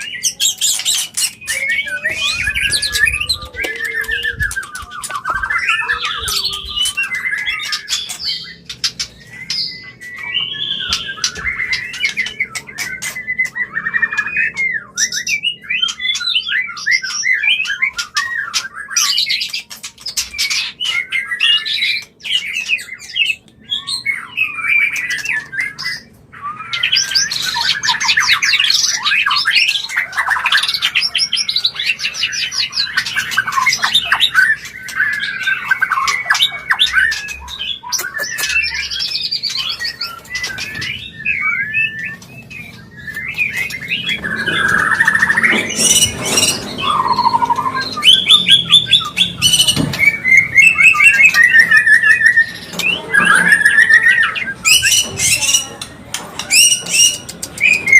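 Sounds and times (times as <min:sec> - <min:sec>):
bird whistled song: 0:00.0 - 0:57.9.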